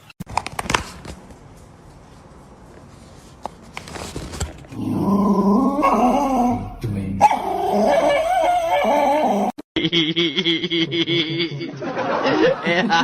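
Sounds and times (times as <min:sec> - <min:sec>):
dog whining and howling: 0:04.8 - 0:09.6.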